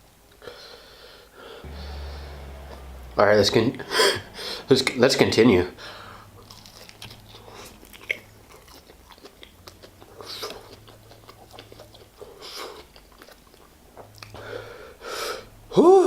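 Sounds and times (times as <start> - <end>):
loud breaths: 0.4 - 1.7, 5.8 - 6.4, 14.4 - 15.5
chewing crispy food: 6.0 - 14.4.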